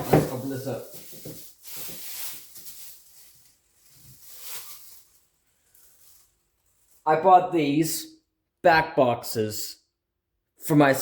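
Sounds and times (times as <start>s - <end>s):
packaging rustling and crinkling: 0.0s - 7.1s.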